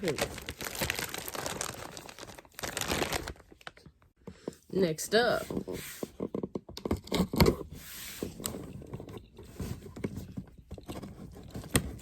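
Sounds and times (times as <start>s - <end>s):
cardboard scraping and rustling: 7.2s - 12.0s.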